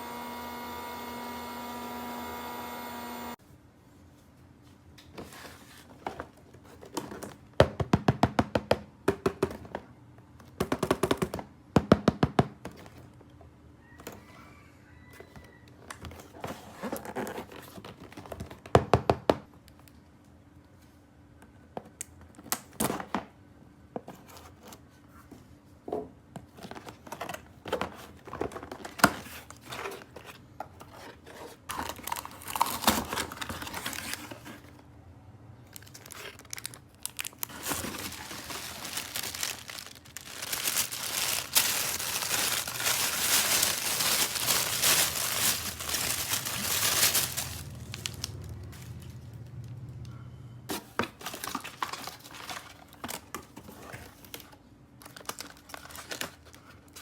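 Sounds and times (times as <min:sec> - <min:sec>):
packaging tearing and crinkling: 0:31.7 - 0:34.7, 0:35.7 - 0:49.2, 0:51.2 - 0:57.0.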